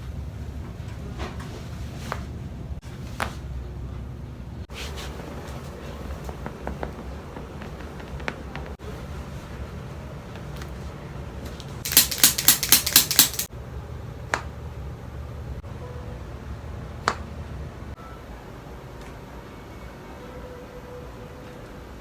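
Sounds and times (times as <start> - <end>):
joints cracking with sharp pops: 11.9 - 13.5.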